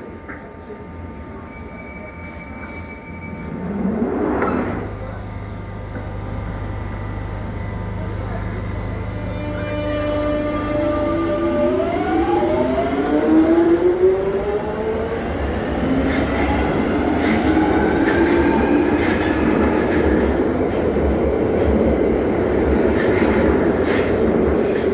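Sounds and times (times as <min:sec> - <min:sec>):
train traction motors whining: 0:02.6 - 0:24.9
wheels rumbling on rails: 0:12.5 - 0:24.9.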